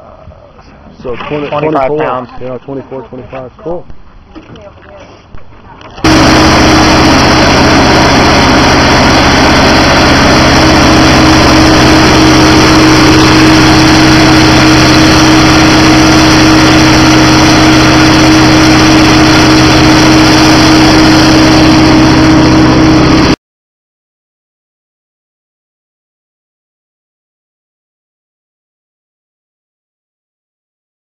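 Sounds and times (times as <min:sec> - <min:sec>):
mill grinding pods: 0:06.0 - 0:23.4.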